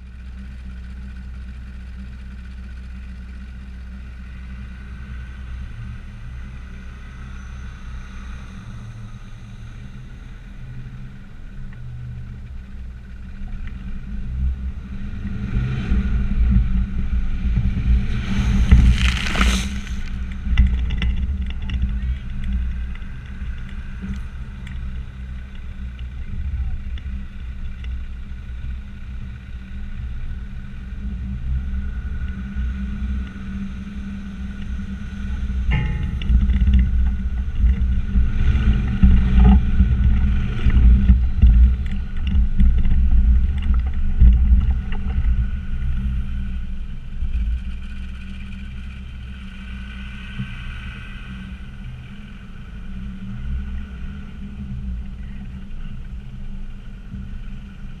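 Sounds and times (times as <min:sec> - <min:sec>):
diesel engine running under load: 0:00.0 - 0:58.0
loud rushing noise: 0:17.4 - 0:20.8.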